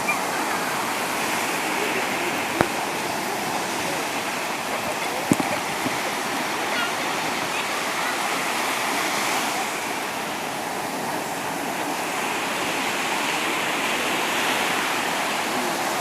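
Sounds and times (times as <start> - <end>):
sea waves washing ashore: 0.0 - 16.0.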